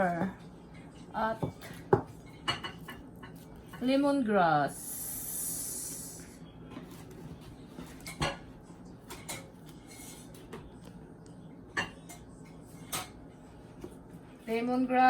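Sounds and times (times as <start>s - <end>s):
dishes and utensils clinking: 0.0s - 3.9s, 7.4s - 10.8s, 11.7s - 13.2s.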